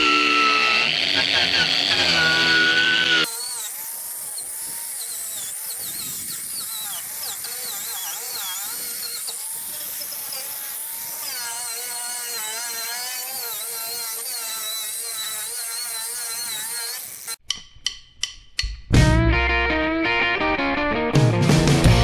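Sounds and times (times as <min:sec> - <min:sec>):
angle grinder whining: 0:00.0 - 0:17.4.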